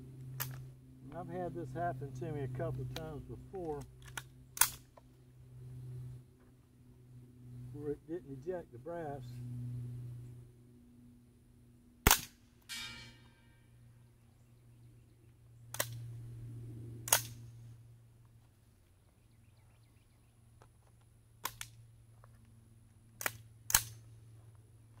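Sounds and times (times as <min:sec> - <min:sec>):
rifle metallic clicks and snaps: 0:00.3 - 0:00.6, 0:03.6 - 0:04.9, 0:15.7 - 0:16.0, 0:17.0 - 0:17.4, 0:21.4 - 0:21.8, 0:23.2 - 0:24.0
brief metallic ring: 0:12.7 - 0:13.7.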